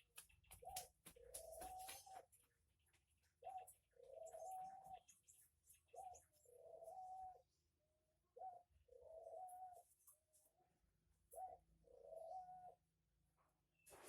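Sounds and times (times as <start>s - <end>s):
dove cooing: 0.5s - 2.2s, 3.4s - 5.1s, 5.9s - 7.6s, 8.3s - 10.1s, 11.3s - 12.9s.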